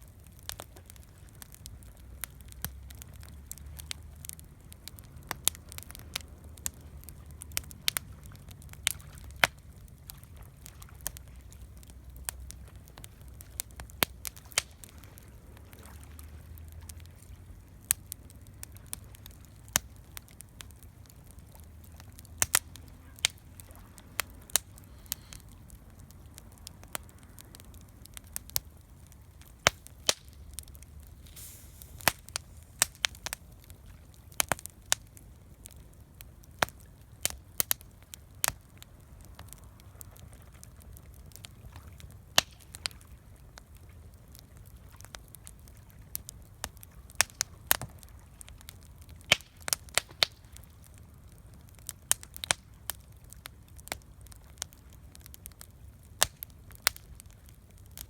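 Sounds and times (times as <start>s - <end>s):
low steady rumble: 0.0s - 42.4s
campfire crackling and popping: 0.0s - 58.0s.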